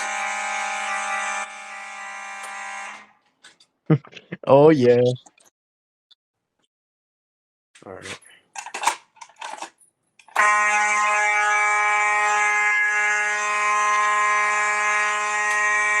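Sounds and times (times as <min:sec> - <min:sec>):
fire alarm horn buzzing: 0:00.0 - 0:03.1, 0:10.3 - 0:16.0.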